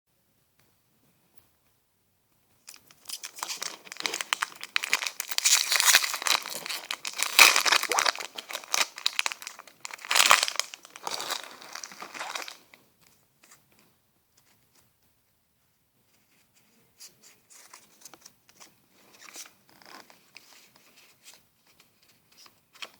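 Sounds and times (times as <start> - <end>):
foil wrapper crinkling and tearing: 2.7 - 12.7.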